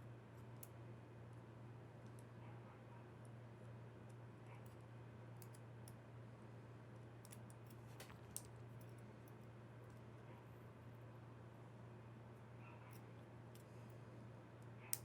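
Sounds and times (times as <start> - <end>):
small clicks of lock parts: 0.4 - 0.8, 3.6 - 6.0, 7.2 - 10.0, 14.6 - 15.0.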